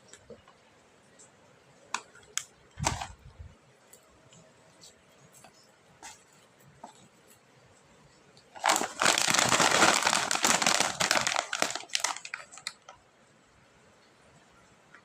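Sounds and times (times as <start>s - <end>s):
plastic wrapper crinkling: 8.6s - 13.0s.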